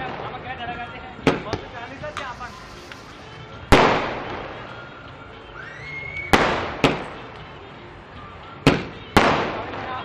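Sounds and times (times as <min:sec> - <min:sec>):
fireworks bangs: 0:01.2 - 0:04.6
firework whistle rising: 0:01.7 - 0:05.0, 0:05.6 - 0:06.5.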